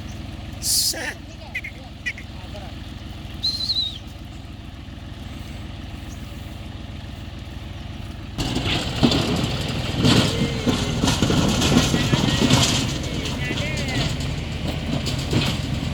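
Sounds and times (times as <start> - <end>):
tractor diesel engine running: 0.0 - 15.9.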